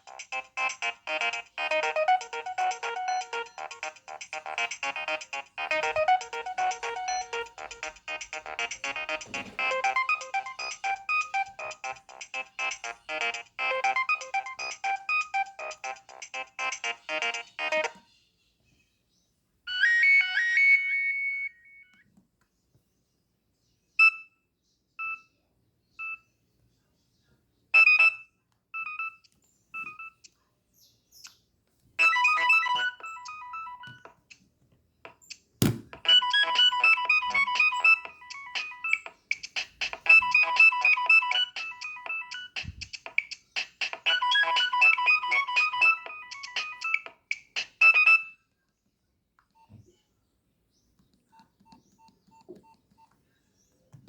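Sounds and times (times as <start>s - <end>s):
beepy electronic ringtone melody: 0.0s - 17.9s, 32.0s - 34.1s, 36.1s - 39.1s, 40.1s - 42.6s, 44.0s - 47.1s.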